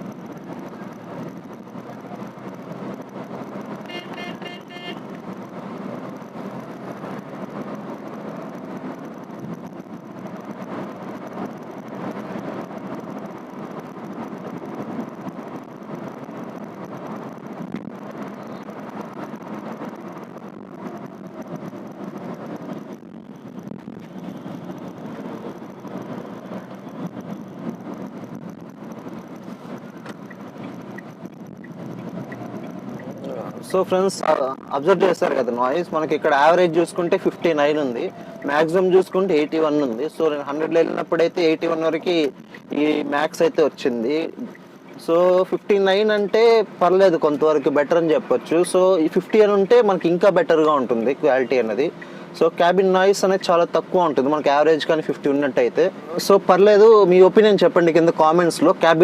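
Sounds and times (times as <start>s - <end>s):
car engine: 0.0s - 59.0s
wind noise: 5.3s - 35.0s.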